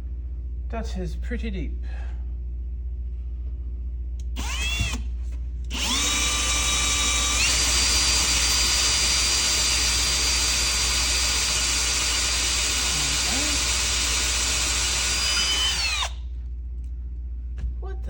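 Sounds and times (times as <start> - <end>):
power drill whining: 4.4 - 5.1, 5.7 - 16.2.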